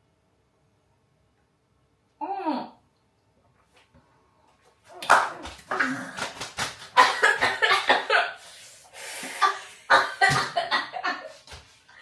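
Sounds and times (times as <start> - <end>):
people coughing: 7.0 - 8.3, 9.9 - 10.9
sharp breathing: 8.4 - 9.9.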